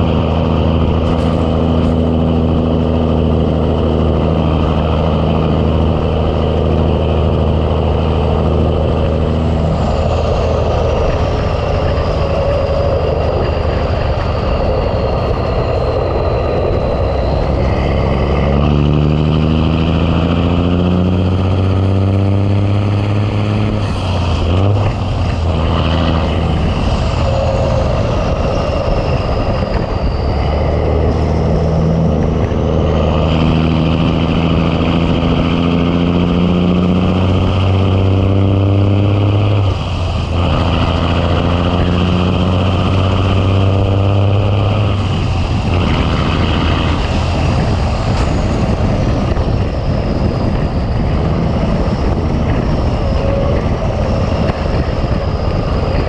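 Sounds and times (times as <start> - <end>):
diesel truck engine under load: 0.0 - 56.0.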